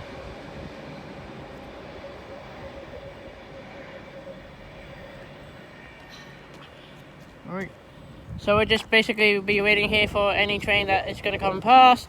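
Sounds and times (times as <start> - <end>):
electric train passing: 0.0 - 12.0
train hum: 0.0 - 12.0.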